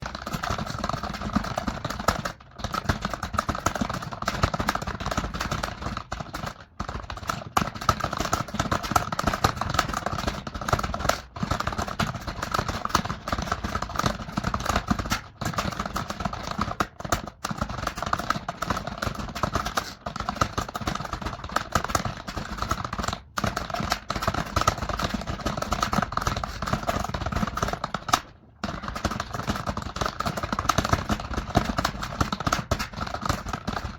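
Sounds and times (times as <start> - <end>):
fast typing on keyboard: 0.0 - 33.9.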